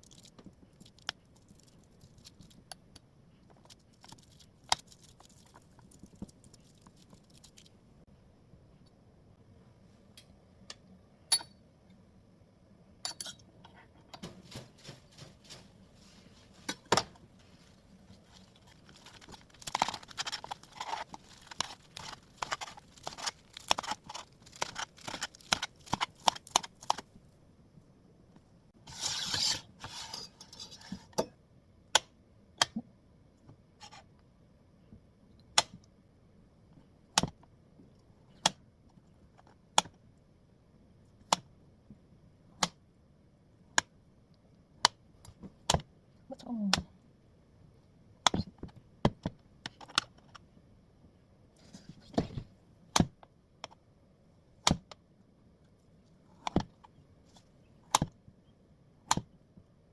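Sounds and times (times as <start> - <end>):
rustling and clinking: 13.1 - 23.3.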